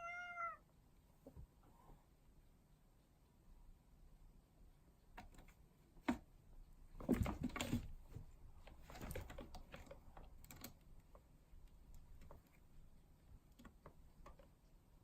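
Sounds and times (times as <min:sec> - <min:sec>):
cats scuffling: 0:06.9 - 0:11.1.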